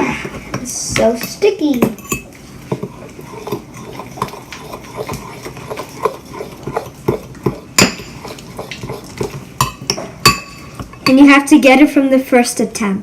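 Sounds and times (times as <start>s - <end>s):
spoon scraping a bowl: 1.8s - 11.3s.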